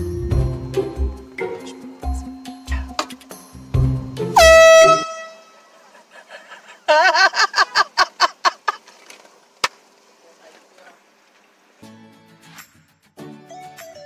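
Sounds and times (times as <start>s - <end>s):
low thumping music beat: 0.0s - 5.1s
air horn blast: 4.3s - 5.7s.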